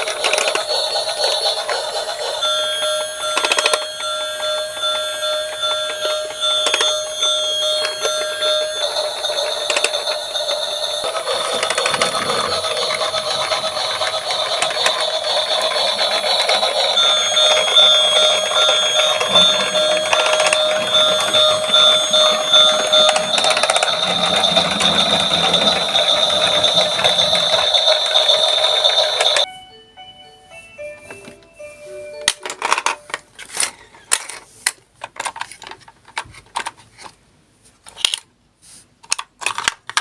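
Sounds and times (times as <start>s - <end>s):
toy cars rolling and rattling: 0.0s - 29.5s, 32.2s - 37.2s, 37.8s - 38.3s, 39.0s - 40.0s
toy sirens electronic tones: 0.0s - 29.7s.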